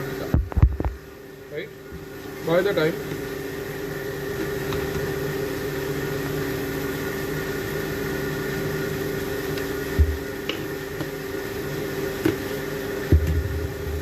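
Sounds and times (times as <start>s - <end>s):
motor humming: 0.0s - 14.0s
low thump: 13.1s - 14.0s.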